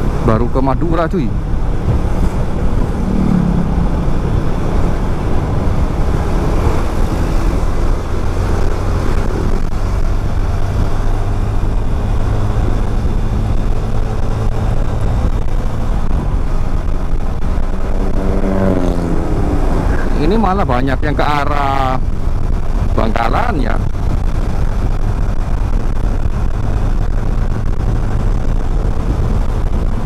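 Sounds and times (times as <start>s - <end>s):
wind rush on microphone: 0.0s - 30.0s
motorcycle engine running: 1.1s - 20.4s.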